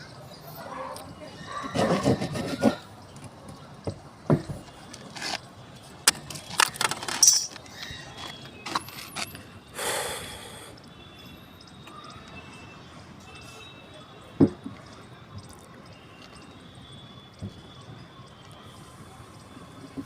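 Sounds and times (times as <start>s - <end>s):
tools and plumbing parts clicking: 6.1s - 9.3s.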